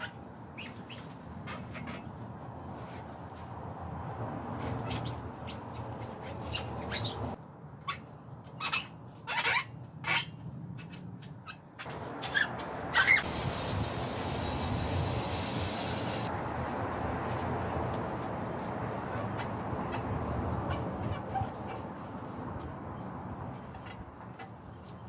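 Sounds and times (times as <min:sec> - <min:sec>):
short scraping strokes: 0:11.9 - 0:16.3
steady hiss: 0:13.2 - 0:16.3.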